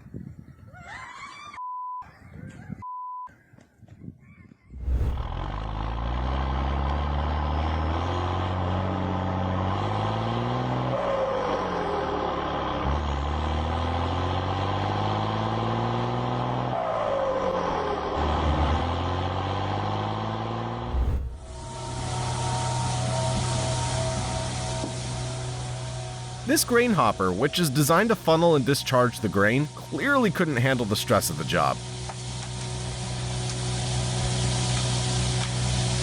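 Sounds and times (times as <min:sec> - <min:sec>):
short beeps: 0:02.9 - 0:03.3
vehicle engine revving: 0:04.8 - 0:36.0.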